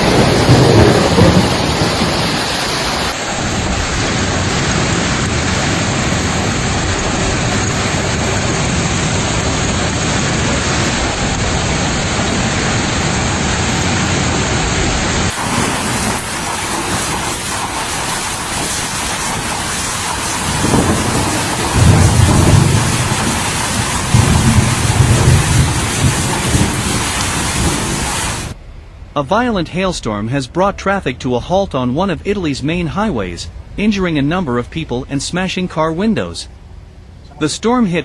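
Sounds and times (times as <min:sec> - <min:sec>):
hail and rain pelting: 0:00.0 - 0:28.6.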